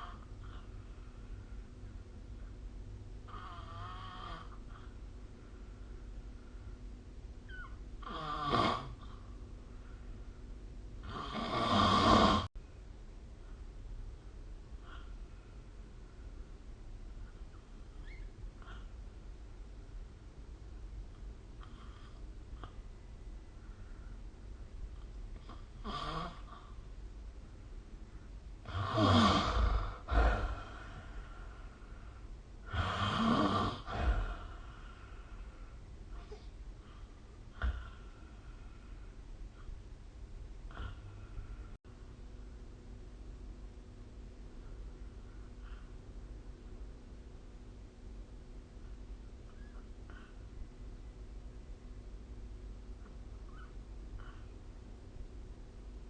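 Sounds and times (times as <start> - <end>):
person snoring: 11.0 - 12.5, 28.6 - 31.3, 32.7 - 34.9
faint breath: 23.5 - 24.4, 33.8 - 39.8.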